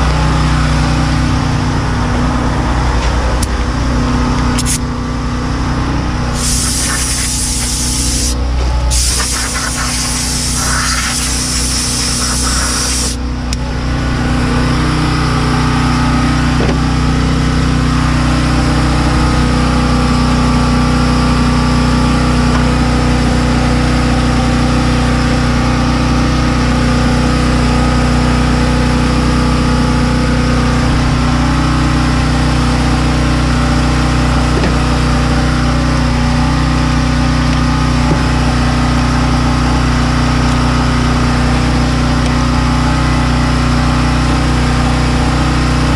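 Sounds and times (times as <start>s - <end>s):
engine idling: 0.0s - 45.9s
spray hiss: 4.6s - 4.8s, 6.4s - 13.2s.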